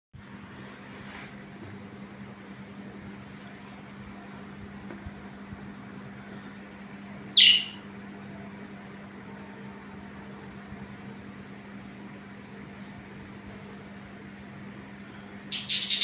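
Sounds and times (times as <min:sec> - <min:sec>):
steady low hum: 0:00.2 - 0:16.0
budgerigar call: 0:07.4 - 0:07.8, 0:15.5 - 0:16.0.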